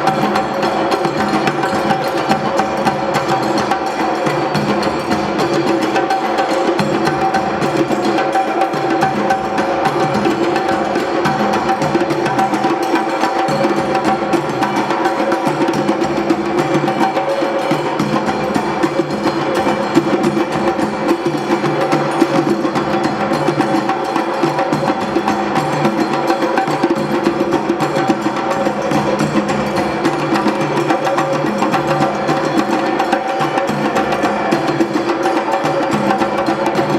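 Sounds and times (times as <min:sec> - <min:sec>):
drum ensemble playing: 0:00.0 - 0:36.9.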